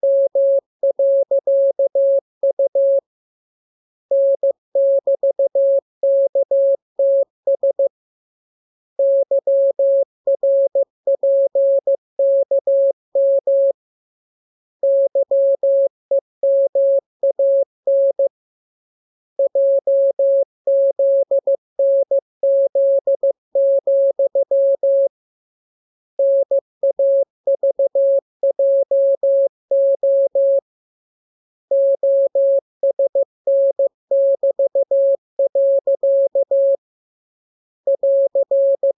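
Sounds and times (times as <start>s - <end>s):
morse code tone: 26.2s - 30.6s, 31.7s - 36.8s, 37.9s - 38.9s.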